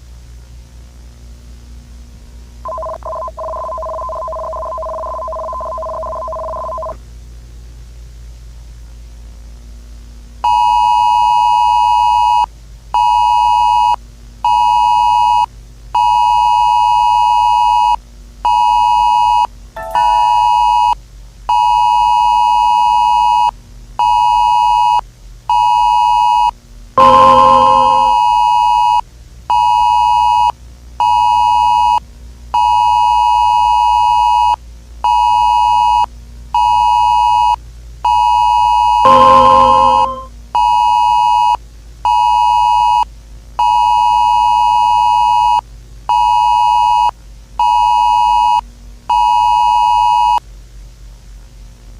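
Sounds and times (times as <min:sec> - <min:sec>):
high electronic beep: 0:19.8 - 0:20.6, 0:27.0 - 0:28.4, 0:39.0 - 0:40.3
loud ringing sound: 0:19.8 - 0:20.8, 0:27.0 - 0:28.6, 0:39.0 - 0:40.3.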